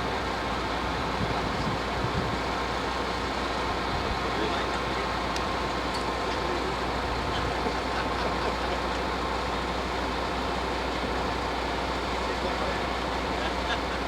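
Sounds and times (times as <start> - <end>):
low engine rumble: 0.0 - 14.0.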